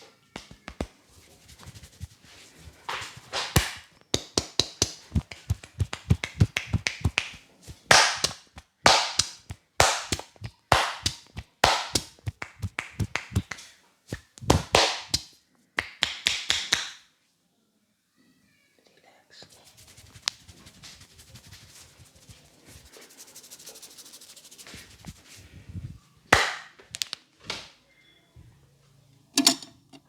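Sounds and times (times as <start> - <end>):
hand slaps: 0.4 - 1.0, 2.9 - 17.0, 26.4 - 27.6
hands tapping on a head: 0.4 - 2.2, 2.9 - 17.0.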